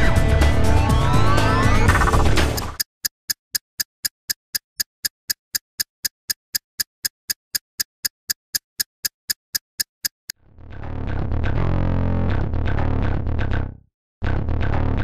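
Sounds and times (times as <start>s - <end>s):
music: 0.0s - 2.8s, 10.4s - 15.0s
sharp even ticking: 1.9s - 10.3s.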